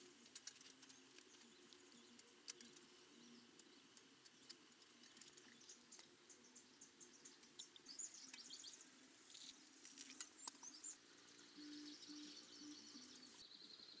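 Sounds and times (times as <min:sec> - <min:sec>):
birds chirping: 0:05.2 - 0:14.0.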